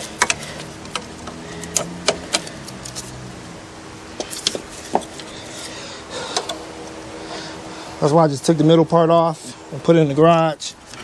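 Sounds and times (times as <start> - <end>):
tools clicking and knocking: 0.0 - 3.1
faint steady hum: 0.0 - 11.0.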